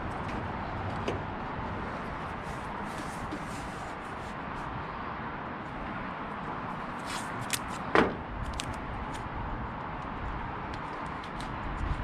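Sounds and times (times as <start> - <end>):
tape ripping: 7.0 - 7.8, 8.4 - 9.2.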